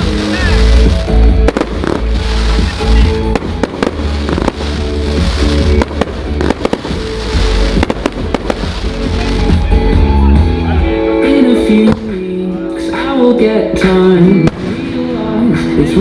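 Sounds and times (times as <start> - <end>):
fireworks bursting: 0.0 - 10.2, 14.4 - 15.5
loud music with heavy bass: 0.0 - 16.0.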